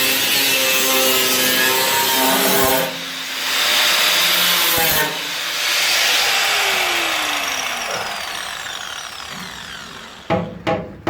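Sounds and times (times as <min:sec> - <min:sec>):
angle grinder cutting sheet steel: 0:00.0 - 0:10.5
sharp knock: 0:10.3 - 0:11.0.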